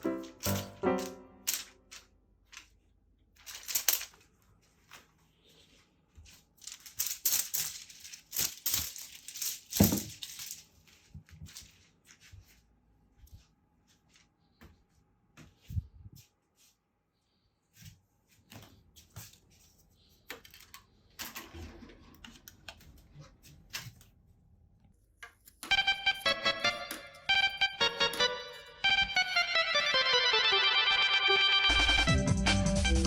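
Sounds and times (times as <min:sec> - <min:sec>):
crinkly toy rustling: 0:00.2 - 0:12.6.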